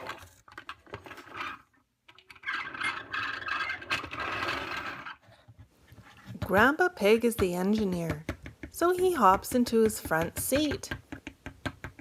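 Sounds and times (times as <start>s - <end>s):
plastic scraping and rattling: 0.0s - 6.6s.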